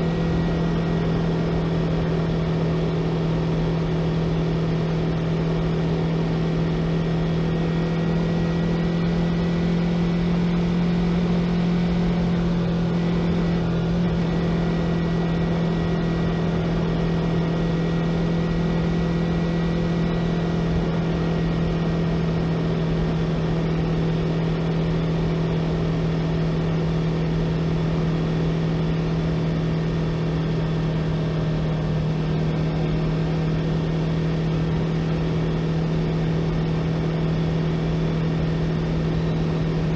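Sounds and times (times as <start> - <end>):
motorcycle engine cruising: 0.0 - 39.9.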